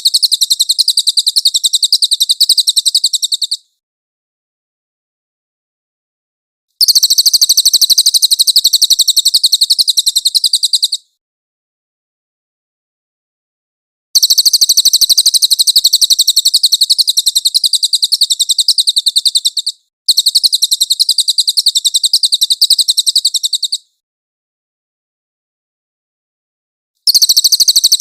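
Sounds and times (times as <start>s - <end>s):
songbird trilling: 0.0s - 3.6s, 6.8s - 11.1s, 14.2s - 23.8s, 27.1s - 28.0s.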